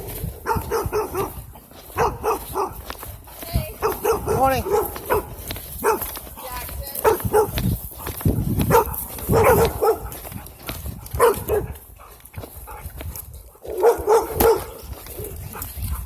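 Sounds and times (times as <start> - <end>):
dog barking: 0.1 - 3.0, 3.7 - 7.6, 8.6 - 10.4, 11.1 - 12.8, 13.5 - 16.0.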